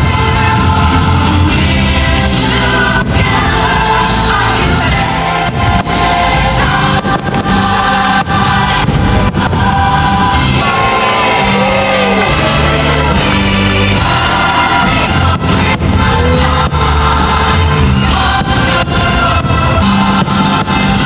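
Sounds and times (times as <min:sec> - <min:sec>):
loud music with choir singing: 0:00.0 - 0:21.0.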